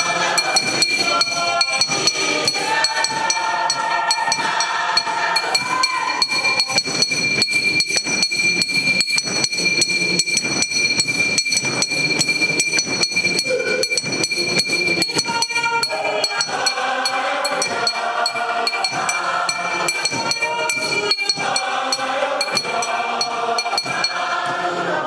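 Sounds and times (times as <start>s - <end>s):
voices singing: 0.0s - 7.1s, 13.3s - 25.0s
rhythmic clicking or clapping: 0.0s - 25.0s
steady high tone: 0.0s - 25.0s.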